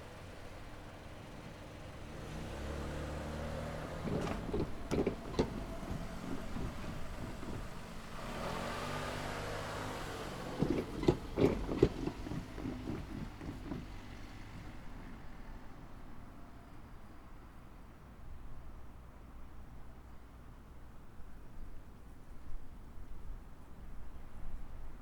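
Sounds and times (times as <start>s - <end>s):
vehicle engine approaching: 1.2s - 15.3s
tyres thumping over rails: 3.6s - 15.1s.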